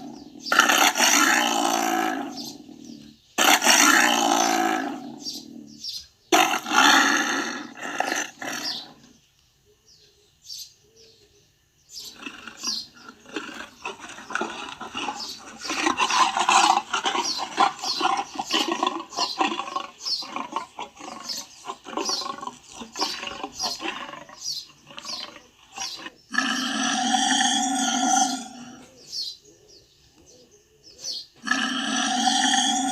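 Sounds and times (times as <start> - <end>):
tiger growling and grunting: 0.0 - 9.2, 12.0 - 29.3, 31.2 - 32.9
tiger roaring: 0.0 - 9.2, 12.0 - 29.1, 31.4 - 32.9.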